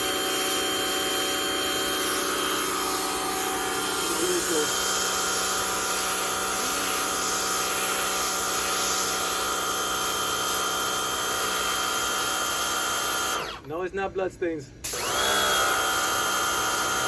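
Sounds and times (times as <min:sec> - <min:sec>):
pressure washer motor whine: 0:00.0 - 0:13.7, 0:14.8 - 0:17.0
water jet hissing on concrete: 0:03.0 - 0:09.3.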